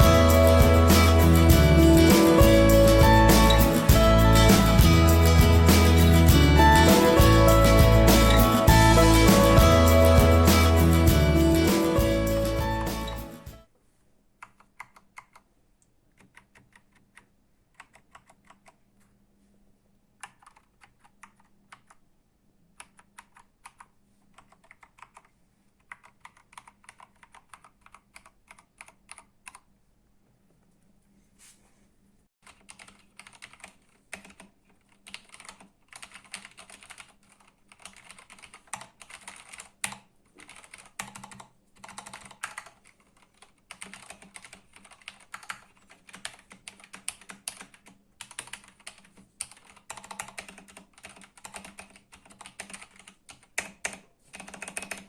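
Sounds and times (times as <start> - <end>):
mechanical keyboard typing: 14.4 - 15.5, 16.1 - 18.9, 20.2 - 22.0, 22.8 - 29.7, 32.4 - 55.0.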